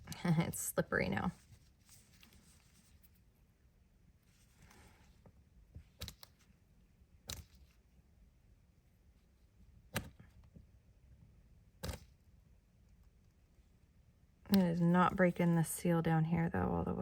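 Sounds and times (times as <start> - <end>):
soft rustle: 1.0 - 10.6.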